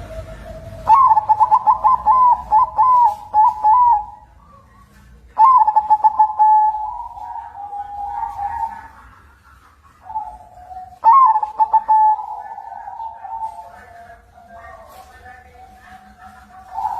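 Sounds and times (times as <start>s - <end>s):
dove cooing: 0.0s - 16.9s.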